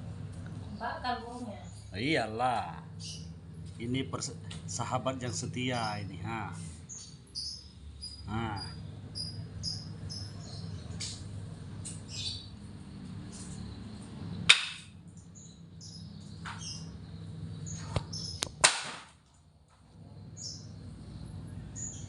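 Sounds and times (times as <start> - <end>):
low steady hum: 0.0 - 22.0
small bird chirping: 2.9 - 3.4, 5.3 - 6.2, 6.9 - 14.1, 15.1 - 18.6, 20.2 - 22.0.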